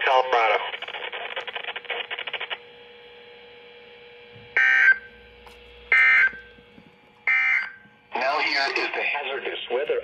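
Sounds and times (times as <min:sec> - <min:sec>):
harsh digital data bursts: 0:04.6 - 0:05.0, 0:05.9 - 0:06.4, 0:07.2 - 0:09.4.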